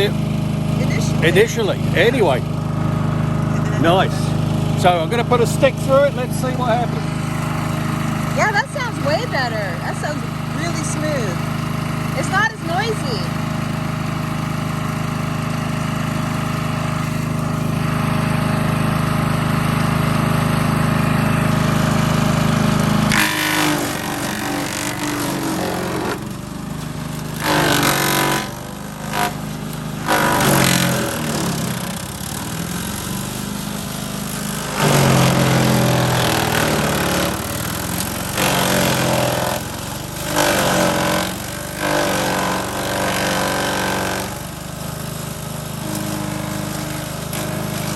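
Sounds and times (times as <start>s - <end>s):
wood chipper engine running: 0.0s - 47.9s
wood chipping bursts: 23.1s - 31.6s.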